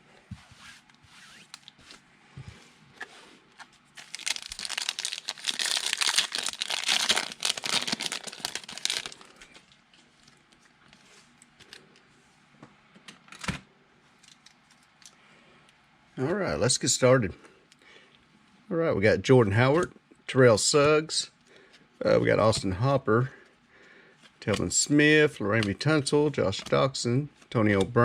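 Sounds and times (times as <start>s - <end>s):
plastic packaging tearing and crinkling: 3.6s - 9.6s.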